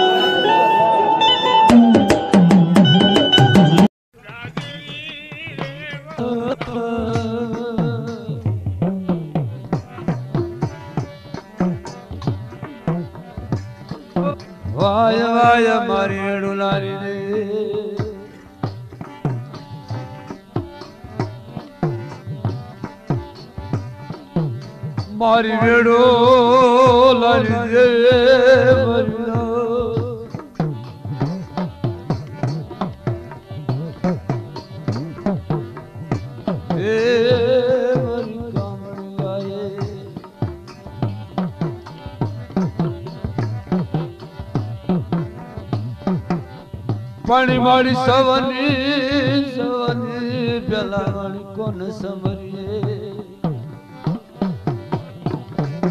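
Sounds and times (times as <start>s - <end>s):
quiet melodic accompaniment: 0.0s - 3.9s
person singing: 0.0s - 8.5s, 25.1s - 30.4s, 33.7s - 40.4s, 47.2s - 53.6s
drum beating quick rhythm: 0.0s - 15.8s, 17.6s - 55.9s.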